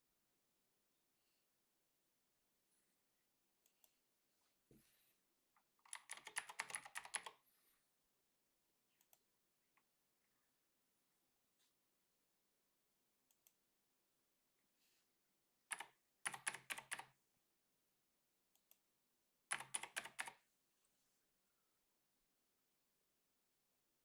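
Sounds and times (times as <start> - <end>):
keyboard typing: 5.8 - 7.4, 15.7 - 17.1, 19.5 - 20.4.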